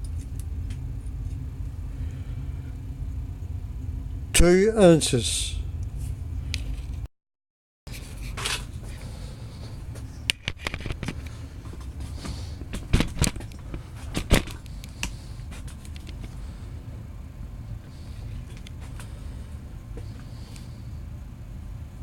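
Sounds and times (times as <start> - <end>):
low steady hum: 0.0 - 7.1, 7.9 - 22.0
sharp clicks and knocks: 12.6 - 16.3.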